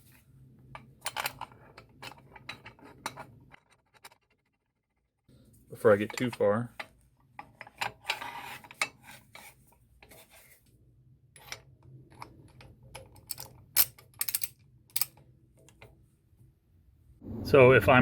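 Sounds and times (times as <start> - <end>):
metal clicks and clinks: 12.2 - 15.9.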